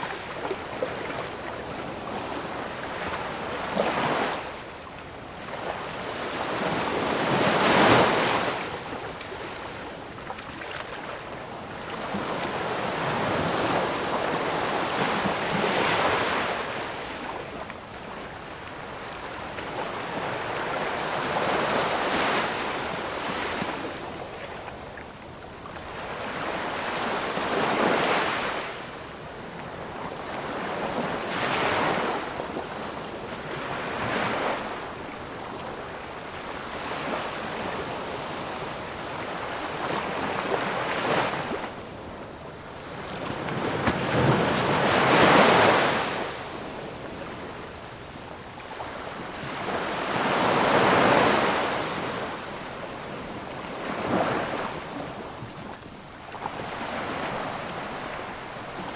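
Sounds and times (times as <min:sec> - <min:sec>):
ocean waves breaking on shore: 0:30.2 - 0:58.9.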